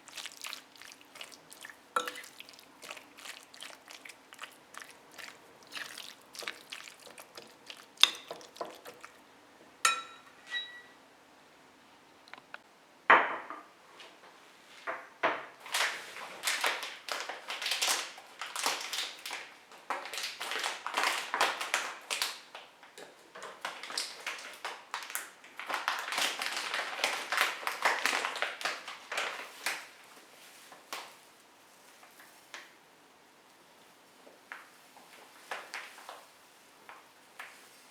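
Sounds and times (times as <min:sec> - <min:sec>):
kitchen utensils and dishes handled: 0:02.0 - 0:02.4, 0:08.0 - 0:09.1, 0:09.8 - 0:10.9.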